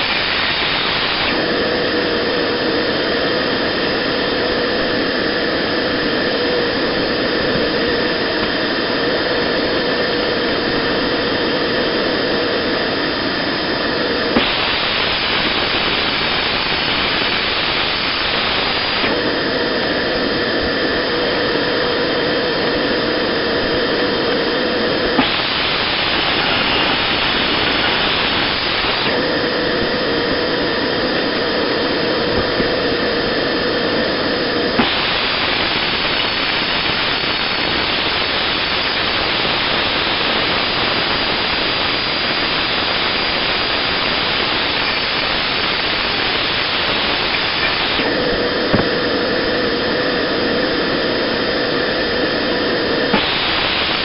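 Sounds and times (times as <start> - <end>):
harsh machine hiss: 0.0 - 54.0
machine hum: 0.0 - 54.0.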